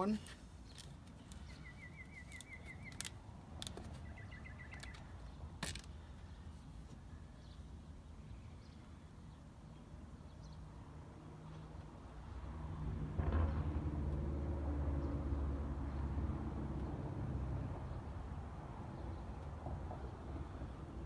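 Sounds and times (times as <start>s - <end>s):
low outdoor rumble: 11.8s - 21.0s.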